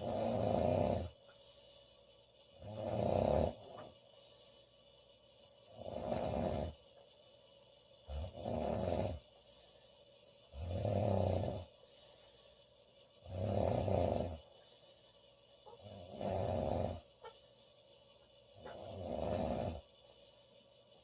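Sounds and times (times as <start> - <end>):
woman snoring: 0.0 - 1.2, 2.6 - 3.9, 5.7 - 6.8, 8.1 - 9.2, 10.5 - 11.7, 13.2 - 14.4, 15.8 - 17.0, 18.7 - 19.8
quiet breathing: 0.0 - 21.0.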